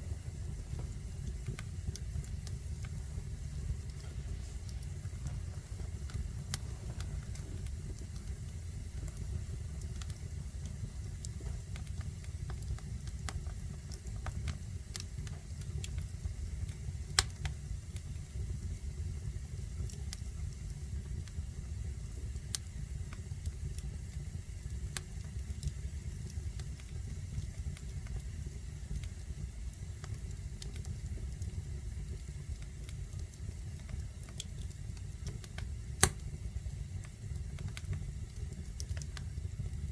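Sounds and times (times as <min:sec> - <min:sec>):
fire crackling and popping: 0:00.0 - 0:39.9
fire rumbling: 0:00.0 - 0:39.9.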